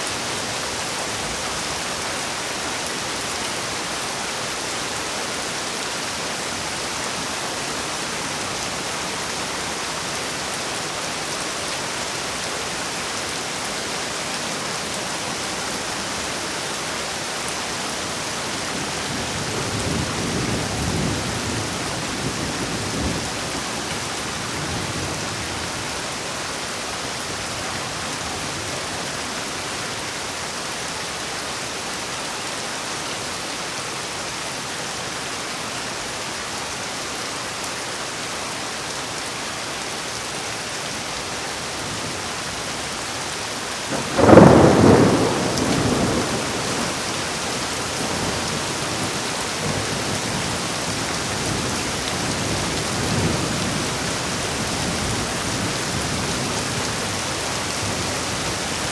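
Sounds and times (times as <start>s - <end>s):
heavy rain: 0.0s - 58.9s
thunder rumbling: 43.9s - 47.2s.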